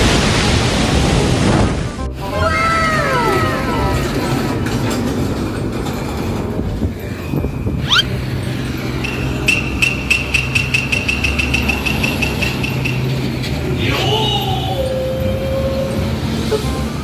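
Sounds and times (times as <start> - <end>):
heavy vehicle engine rumble: 0.0 - 17.0.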